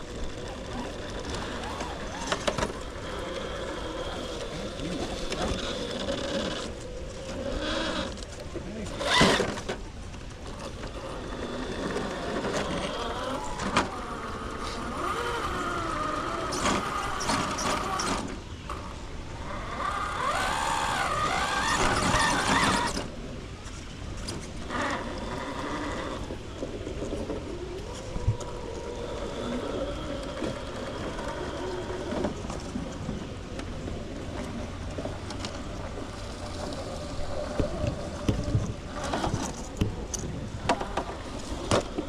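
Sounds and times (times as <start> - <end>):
electric motor and gear whine: 0.0 - 42.0.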